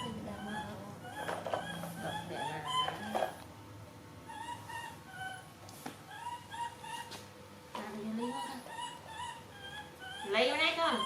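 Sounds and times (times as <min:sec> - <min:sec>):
baby monkey squeaking: 0:00.4 - 0:03.4, 0:08.2 - 0:11.0.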